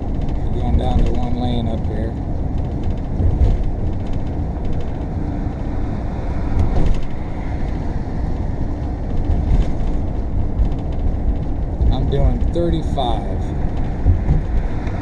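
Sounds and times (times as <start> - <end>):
road and engine noise in vehicle: 0.0 - 15.0.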